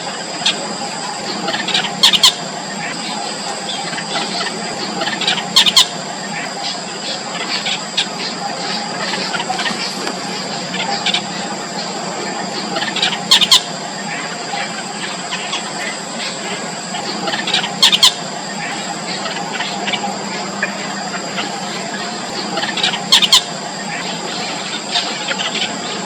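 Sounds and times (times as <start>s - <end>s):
bird chicks calling: 0.0s - 26.0s
steady high whine: 0.0s - 26.0s.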